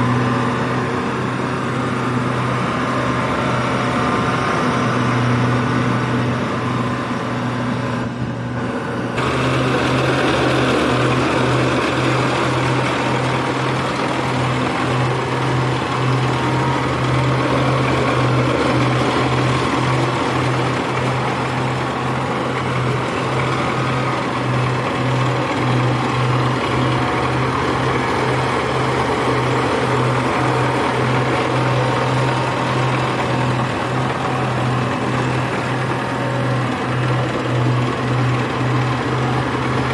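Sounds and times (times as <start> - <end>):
harvester engine humming and clattering: 0.0 - 39.9.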